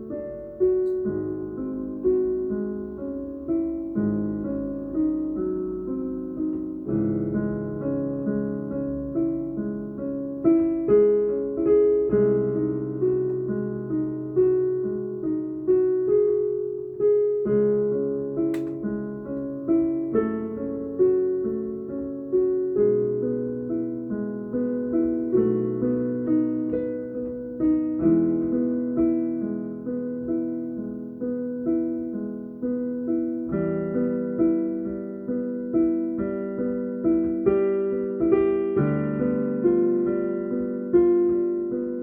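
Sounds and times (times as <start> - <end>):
slow piano broken chords: 0.0 - 42.0
sharp click: 18.5 - 18.9.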